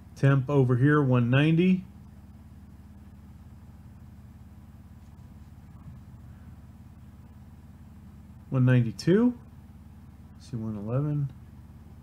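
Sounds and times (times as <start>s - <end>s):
computer fans humming: 0.0s - 12.0s.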